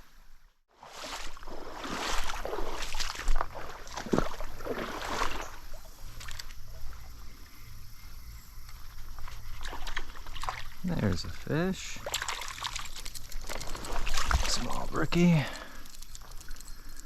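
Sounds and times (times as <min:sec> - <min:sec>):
stream water splashing: 0:00.7 - 0:07.3, 0:08.8 - 0:16.6
running water: 0:09.5 - 0:17.0.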